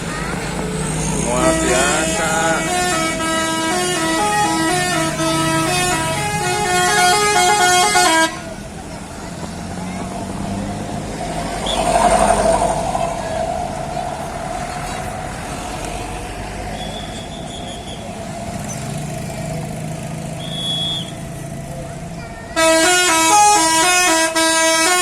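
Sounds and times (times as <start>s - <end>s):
vehicle engine and road noise: 0.0s - 25.0s
bus horn playing a tune: 1.3s - 8.8s, 22.6s - 25.0s.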